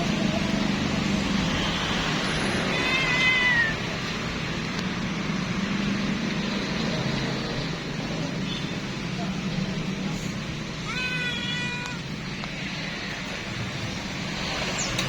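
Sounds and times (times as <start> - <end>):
kitten meowing: 2.7 - 3.9, 10.8 - 12.1.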